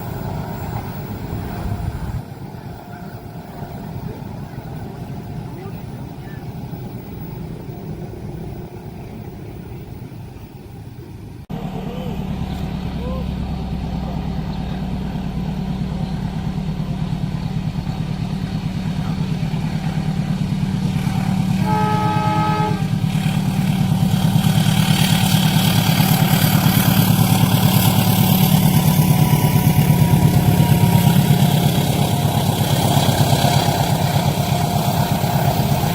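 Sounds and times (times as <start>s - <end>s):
rushing rail and wheel noise: 0.0s - 35.9s
train engine throbbing: 0.0s - 35.9s
train horn chord: 21.1s - 23.1s.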